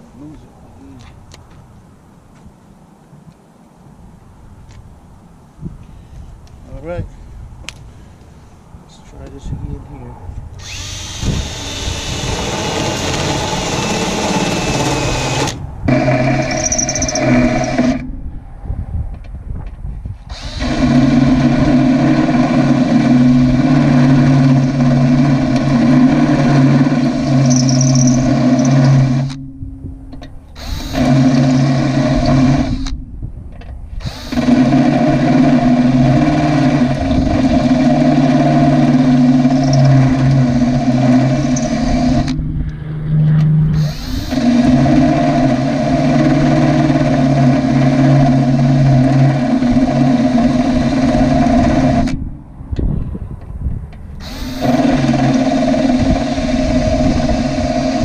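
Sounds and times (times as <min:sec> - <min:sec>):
electric drill drilling metal: 0:10.6 - 0:18.0, 0:20.3 - 0:29.4, 0:30.6 - 0:32.9, 0:34.0 - 0:42.4, 0:43.8 - 0:52.2, 0:54.2 - 0:58.0.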